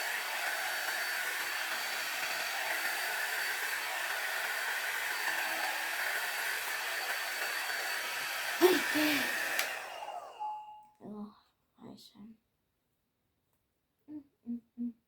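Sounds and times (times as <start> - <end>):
hair dryer blowing: 0.0 - 10.7.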